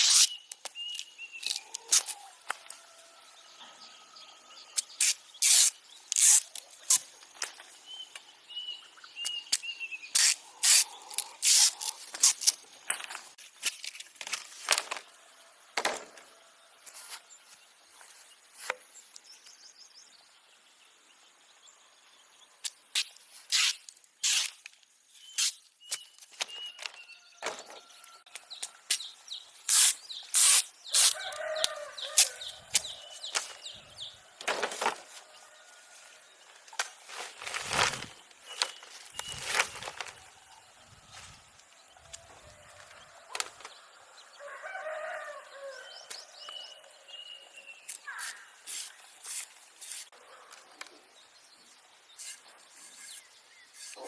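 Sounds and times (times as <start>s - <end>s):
rooster crowing: 1.8s - 4.6s, 31.1s - 33.3s, 42.0s - 46.1s.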